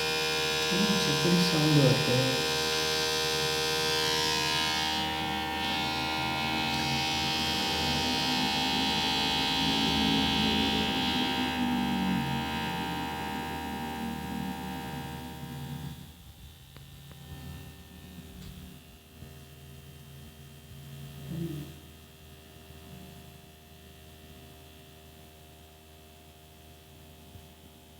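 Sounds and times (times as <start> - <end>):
disc drive motor whirring: 0.0 - 16.0.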